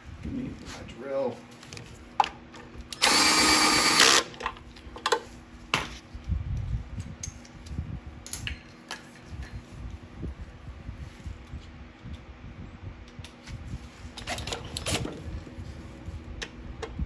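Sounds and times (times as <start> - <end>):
drill spinning bolt: 2.9 - 4.4.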